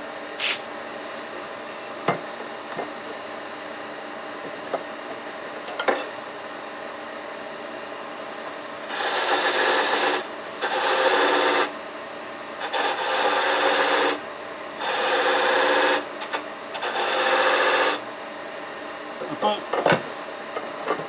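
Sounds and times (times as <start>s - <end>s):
wood lathe running: 8.9s - 11.7s, 12.6s - 14.2s, 14.8s - 18.0s
turning tool scraping wood: 12.6s - 14.2s, 16.8s - 18.0s.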